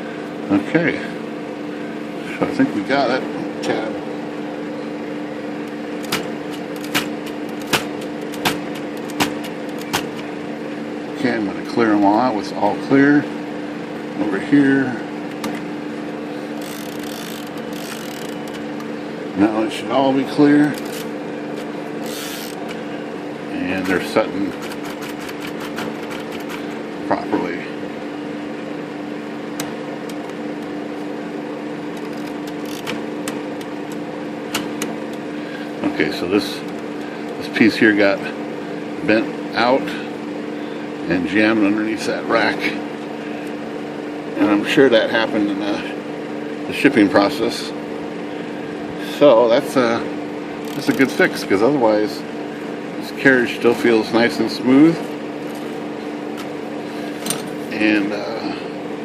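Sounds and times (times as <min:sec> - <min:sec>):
steady low hum: 0:00.0 - 0:59.0
typewriter carriage tabbing clacks: 0:06.0 - 0:10.2, 0:23.8 - 0:26.6.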